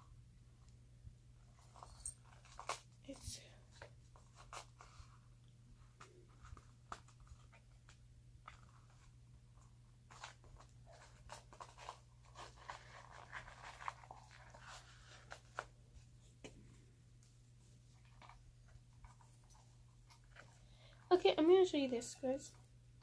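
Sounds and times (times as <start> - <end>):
low steady hum: 0.0 - 23.0
small objects rustling and clicking: 1.6 - 4.9.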